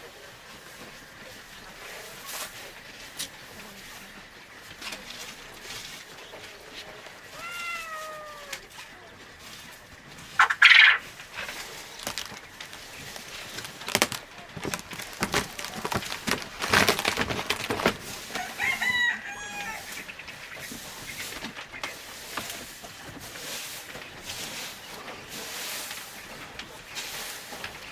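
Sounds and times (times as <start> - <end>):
chicken clucks: 0.0 - 27.9
chickens calling: 0.0 - 27.9
clicks and rustling: 0.6 - 19.2
chicken squawk: 6.9 - 9.2, 10.3 - 11.9, 18.2 - 21.4.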